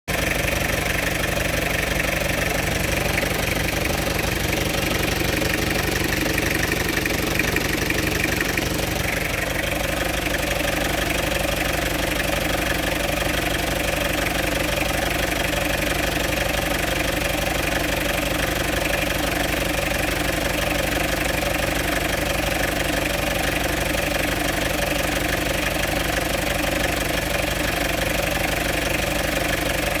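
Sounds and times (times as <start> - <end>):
diesel engine idling: 0.1 - 30.0
extraneous engine noise: 0.2 - 11.5.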